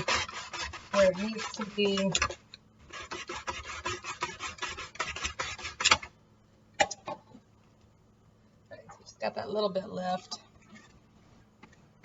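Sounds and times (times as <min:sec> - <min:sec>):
onion rasping across slicer blade: 0:00.0 - 0:06.1.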